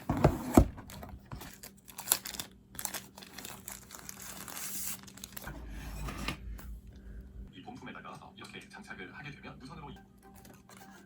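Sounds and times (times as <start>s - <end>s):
packaging crinkling and tearing: 0.9s - 5.4s.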